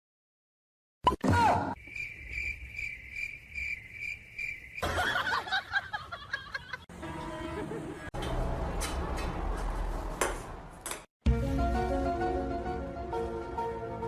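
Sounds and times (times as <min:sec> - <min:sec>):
high even chirping: 0:01.8 - 0:04.8.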